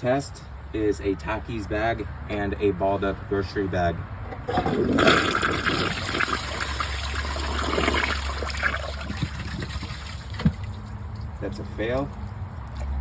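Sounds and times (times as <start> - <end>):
toilet flushing: 4.5 - 10.8.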